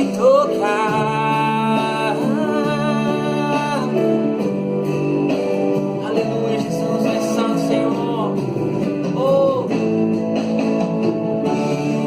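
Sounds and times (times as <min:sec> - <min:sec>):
guitar accompaniment: 0:00.0 - 0:12.0.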